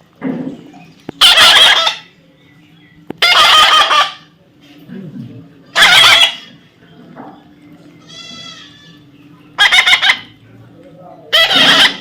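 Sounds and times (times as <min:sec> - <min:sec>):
parrot screeching: 0:01.2 - 0:02.1, 0:03.2 - 0:04.2, 0:05.7 - 0:06.6, 0:09.6 - 0:10.3, 0:11.3 - 0:12.0.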